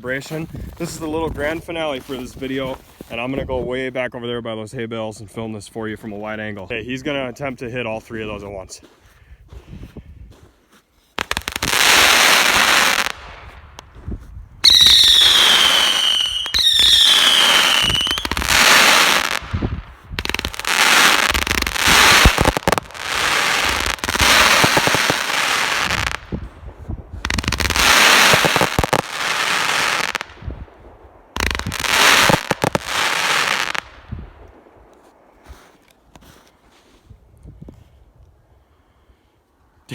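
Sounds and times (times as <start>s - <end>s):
fireworks firing: 11.2s - 13.9s, 14.6s - 26.4s, 27.2s - 30.4s, 31.3s - 35.2s
falling firework whistles: 14.6s - 19.0s.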